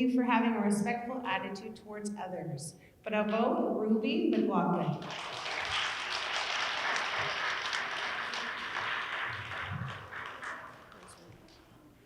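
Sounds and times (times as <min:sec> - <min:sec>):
audience applauding: 0:05.0 - 0:11.7.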